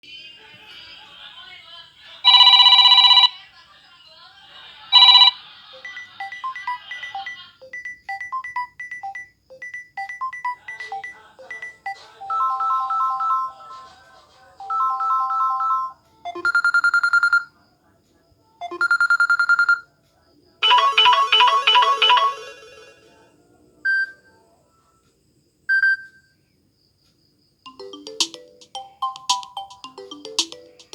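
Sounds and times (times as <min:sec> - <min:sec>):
phone ringtones and notification tones: 0:05.0 - 0:13.7, 0:14.6 - 0:17.5, 0:18.6 - 0:19.8, 0:20.6 - 0:23.1, 0:27.7 - 0:30.9.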